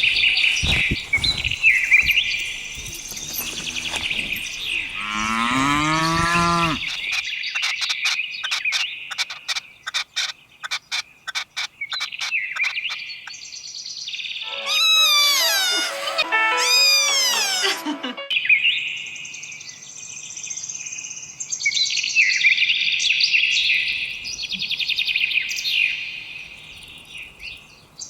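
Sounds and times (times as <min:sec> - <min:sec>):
birds chirping: 0:00.0 - 0:07.6
cow mooing: 0:03.1 - 0:07.1
animal falling calls: 0:14.5 - 0:18.2.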